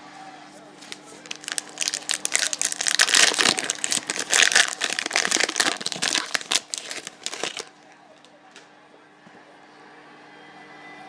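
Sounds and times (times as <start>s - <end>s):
wrapper crinkling and tearing: 0.8s - 8.3s.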